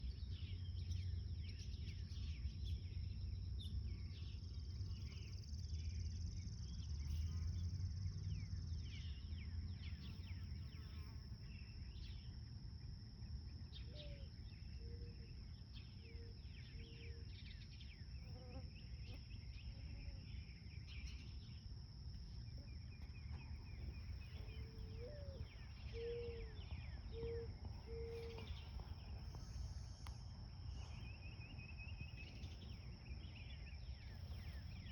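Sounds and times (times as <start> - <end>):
small birds chirping: 0.0 - 12.4, 13.2 - 34.9
insects droning: 0.0 - 34.9
lower bird call: 22.9 - 34.9.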